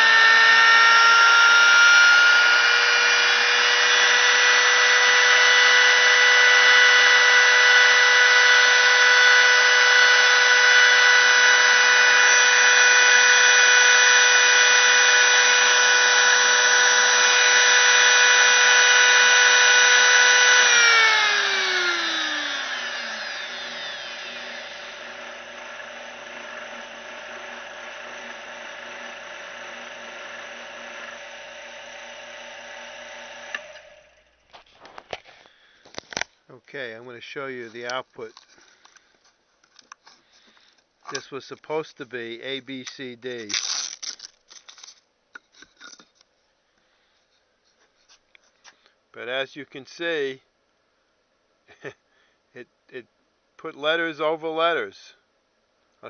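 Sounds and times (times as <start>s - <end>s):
router spindle whining: 0.0s - 36.2s
quiet steady hum: 33.5s - 56.0s.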